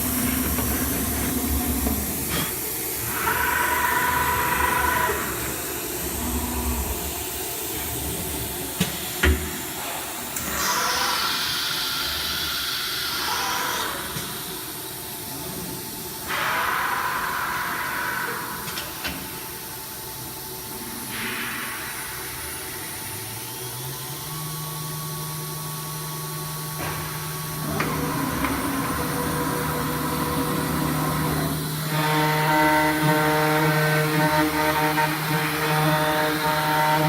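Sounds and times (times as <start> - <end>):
compressed air hissing: 8.8 - 14.9
router spindle whining: 23.3 - 37.0.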